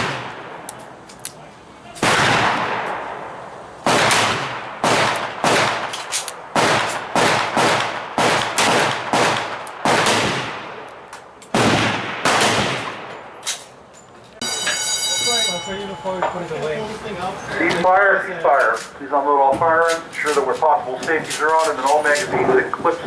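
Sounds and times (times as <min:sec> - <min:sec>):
handgun shots echoing: 0:03.9 - 0:10.9.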